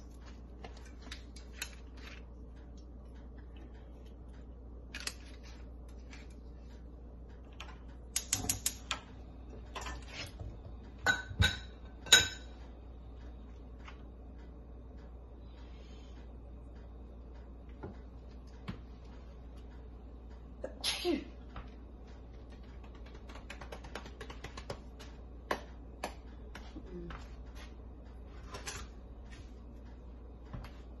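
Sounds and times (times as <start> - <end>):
utensils and dishes clinking: 11.0 - 12.6.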